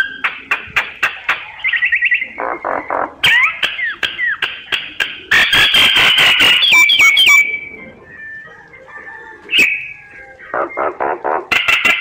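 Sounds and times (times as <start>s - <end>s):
rapid rasping bird chatter: 0.0s - 12.0s
myna whistles: 9.5s - 10.9s.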